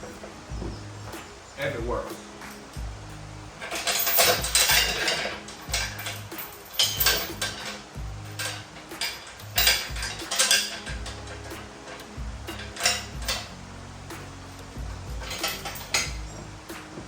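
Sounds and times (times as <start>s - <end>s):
background music with bass line: 0.0s - 17.0s
metallic clanks and rattles of tools: 3.6s - 13.6s, 14.2s - 17.0s.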